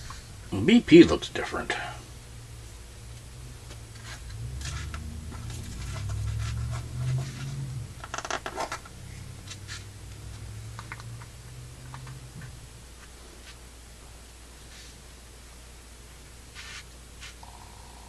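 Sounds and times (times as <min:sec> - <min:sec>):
low steady hum: 0:00.0 - 0:18.0
scratching and rubbing powder: 0:03.9 - 0:08.8, 0:09.4 - 0:09.9, 0:16.5 - 0:17.4.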